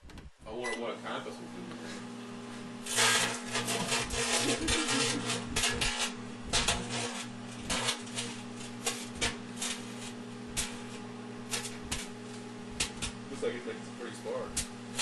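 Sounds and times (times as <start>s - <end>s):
microwave oven humming: 0.1s - 15.0s
crackling and snapping sparks: 2.8s - 15.0s.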